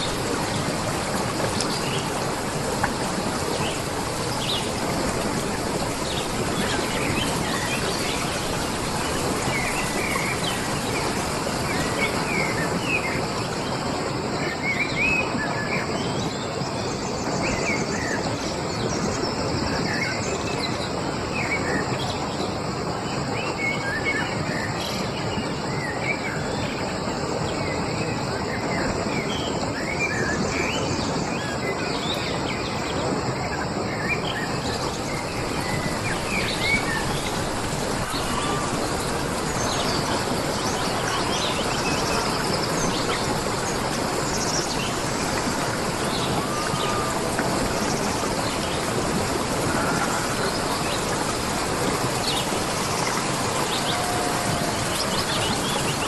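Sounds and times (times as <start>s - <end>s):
steady rushing hiss: 0.0s - 14.4s, 32.4s - 56.0s.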